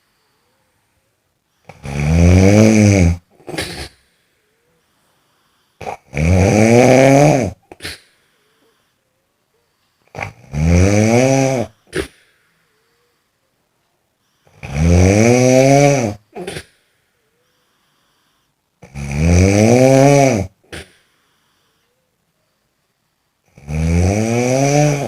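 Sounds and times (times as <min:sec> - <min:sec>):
loud snoring: 0:01.6 - 0:04.1, 0:05.2 - 0:08.8, 0:10.0 - 0:12.3, 0:14.4 - 0:16.8, 0:17.8 - 0:21.8, 0:23.4 - 0:25.0.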